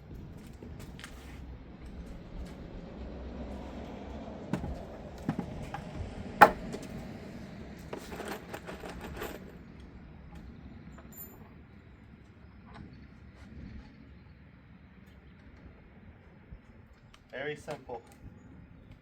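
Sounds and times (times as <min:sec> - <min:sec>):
knocks of wooden boards: 0:04.5 - 0:07.0.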